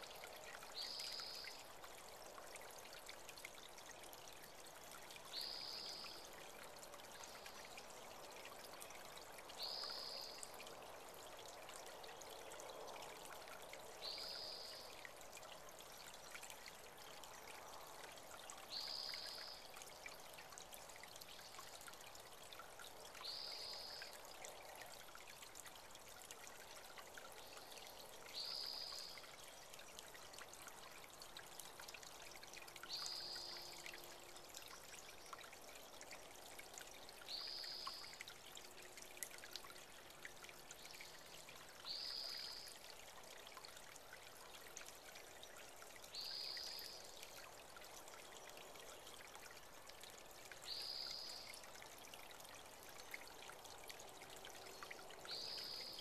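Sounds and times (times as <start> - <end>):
creek water trickling: 0.0 - 56.0.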